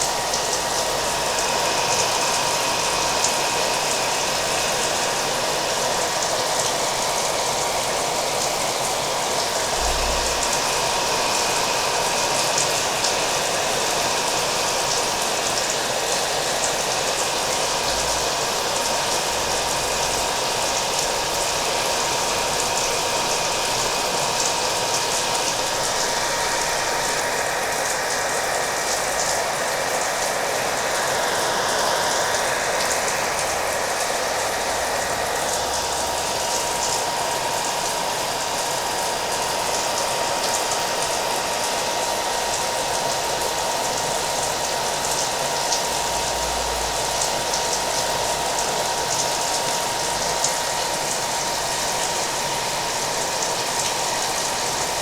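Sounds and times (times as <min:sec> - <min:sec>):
hair dryer whining: 0:00.0 - 0:55.0
rain falling: 0:41.9 - 0:55.0.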